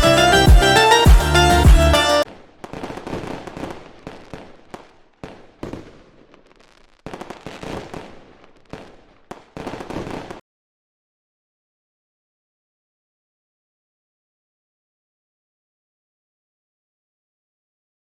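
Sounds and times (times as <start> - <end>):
sharp crackling and popping: 2.2 - 10.4.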